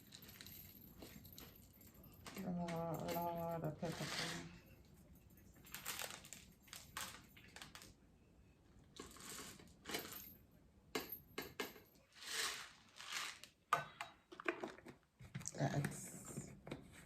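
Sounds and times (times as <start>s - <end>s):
peppercorns rattling: 12.1s - 13.6s.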